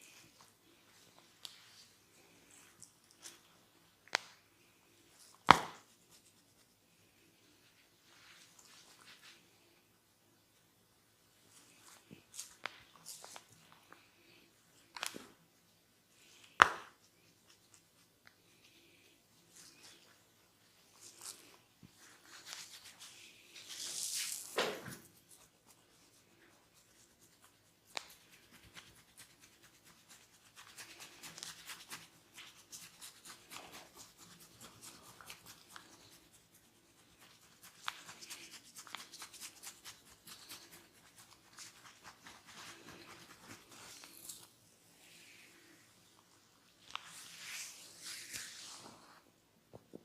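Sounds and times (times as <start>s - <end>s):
hair rustle: 4.7s - 9.8s, 11.4s - 15.4s, 16.2s - 49.3s
fingers rubbing hair and scalp: 20.9s - 24.6s, 25.2s - 49.2s.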